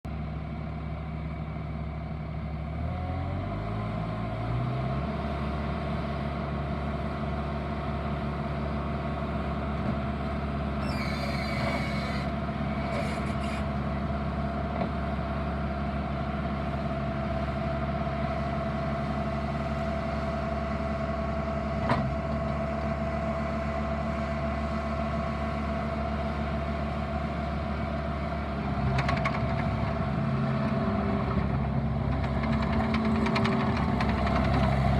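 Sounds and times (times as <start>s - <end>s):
diesel engine running: 0.0s - 34.9s.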